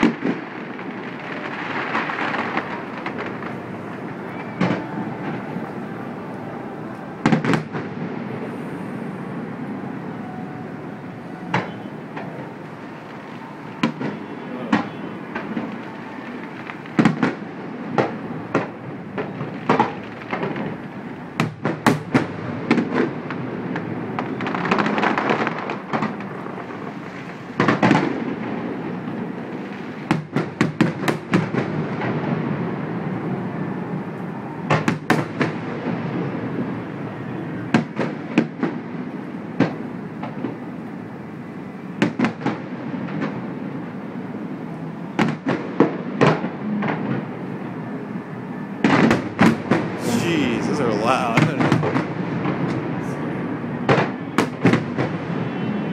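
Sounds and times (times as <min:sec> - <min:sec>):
distant fireworks bangs: 0:00.0 - 0:06.2, 0:07.2 - 0:08.5, 0:11.5 - 0:29.0.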